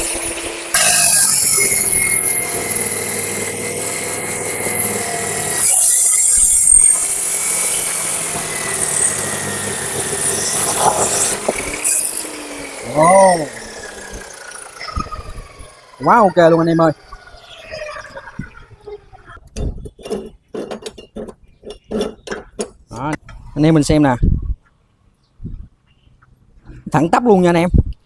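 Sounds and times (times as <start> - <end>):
cut-off saw grinding steel: 0.0 - 18.8, 19.6 - 22.6.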